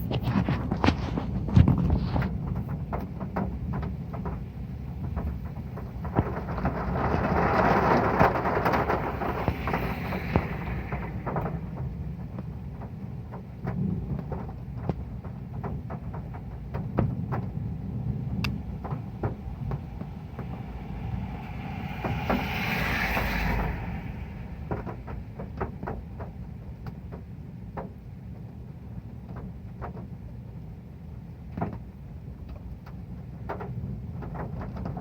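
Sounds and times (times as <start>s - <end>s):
heavy rain on a metal roof: 0.0s - 35.0s
rushing hiss: 7.4s - 12.1s, 18.6s - 25.8s.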